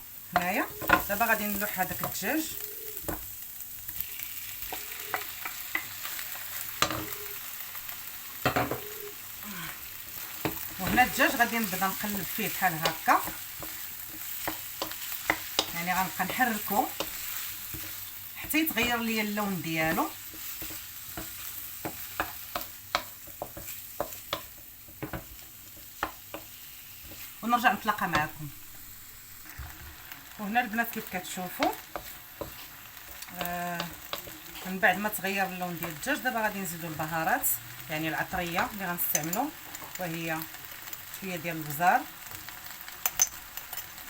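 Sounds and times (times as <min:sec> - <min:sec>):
food sizzling in a frying pan: 0:00.0 - 0:44.0
knocks in the pan: 0:08.4 - 0:08.9.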